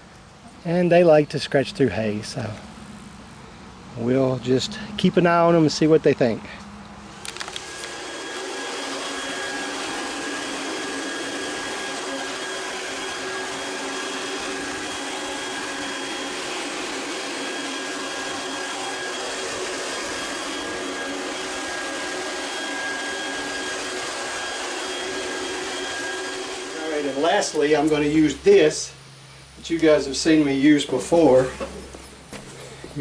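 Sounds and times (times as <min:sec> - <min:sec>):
pressure washer motor running: 0:07.1 - 0:28.6.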